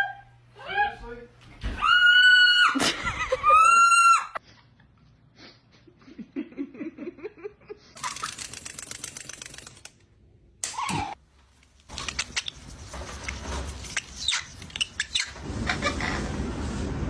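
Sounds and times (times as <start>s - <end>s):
parrot calling: 11.9s - 16.3s
parrot harsh rasp: 11.9s - 16.3s
parrot laugh-like sounds: 14.8s - 16.4s.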